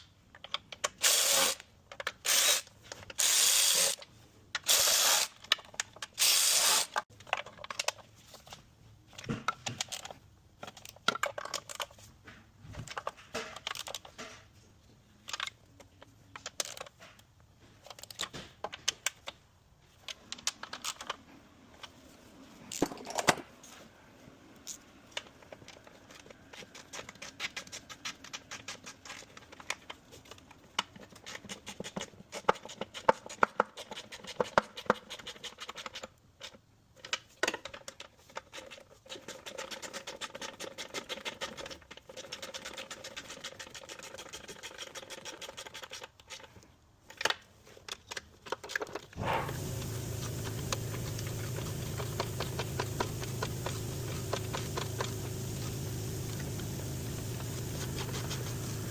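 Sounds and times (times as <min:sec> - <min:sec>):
rapid clicking and scraping: 0:25.1 - 0:58.9
steady low hum: 0:49.2 - 0:58.9.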